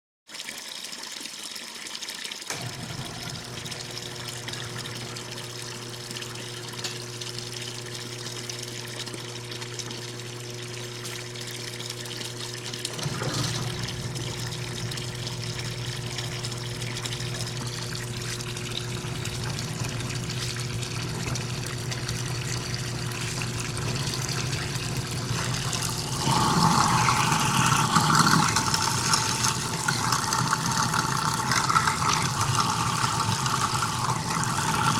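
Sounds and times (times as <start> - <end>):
tap water running into sink: 0.3 - 34.9
garbage disposal motor humming: 2.5 - 34.9.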